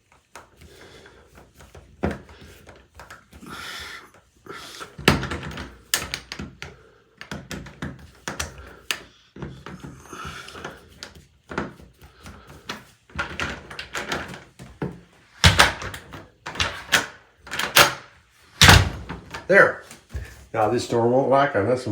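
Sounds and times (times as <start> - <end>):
door knob hardware rattling: 13.2 - 14.4, 15.4 - 19.4.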